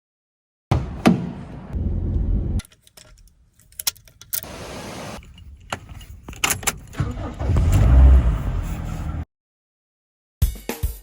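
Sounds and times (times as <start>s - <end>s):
low rumbling handling noise: 1.3s - 9.2s
keys jingling: 2.6s - 4.6s, 5.2s - 7.4s.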